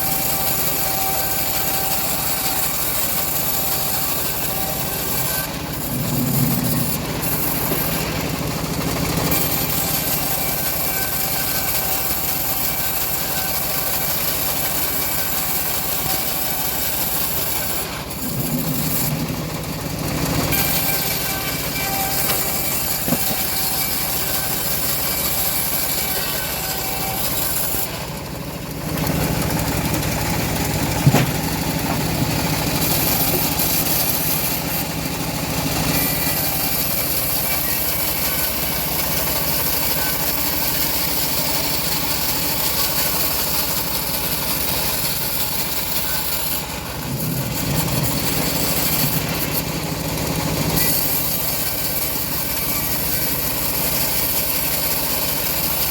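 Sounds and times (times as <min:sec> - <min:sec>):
bandsaw mill sawing logs: 0:00.0 - 0:55.9
sharp knock: 0:31.0 - 0:32.1.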